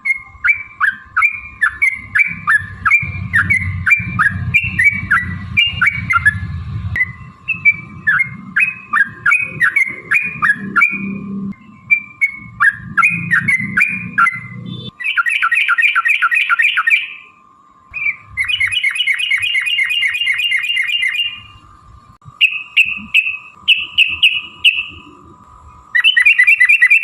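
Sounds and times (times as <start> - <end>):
bird singing bubbly whistled notes: 0.0 - 17.3, 17.9 - 21.6, 22.3 - 25.2, 25.9 - 27.0
low rumble: 2.0 - 14.6.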